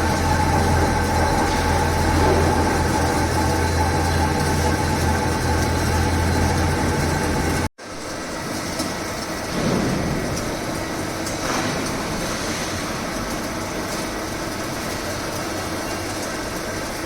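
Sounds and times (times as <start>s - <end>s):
rough machining sound: 0.0s - 7.7s
milling machine humming and whining: 0.0s - 17.0s.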